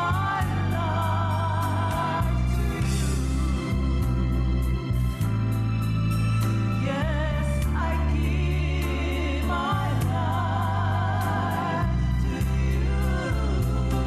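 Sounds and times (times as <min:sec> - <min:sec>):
person singing with vibrato: 0:00.0 - 0:03.2
bass: 0:00.0 - 0:14.0
organ chords: 0:00.0 - 0:14.0.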